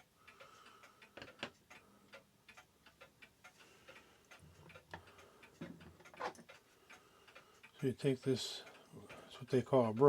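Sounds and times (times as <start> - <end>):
mechanical clock ticking: 0.0 - 10.0.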